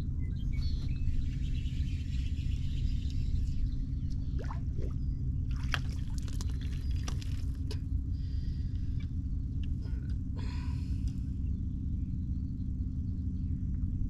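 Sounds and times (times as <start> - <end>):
steady low hum: 0.0 - 14.0
water trickling and splashing: 4.4 - 7.8.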